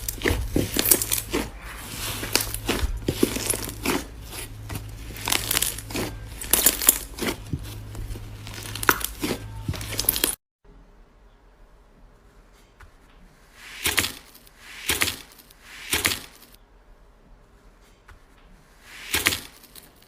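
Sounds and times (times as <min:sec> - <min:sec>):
slime squished by hand: 0:00.0 - 0:10.4.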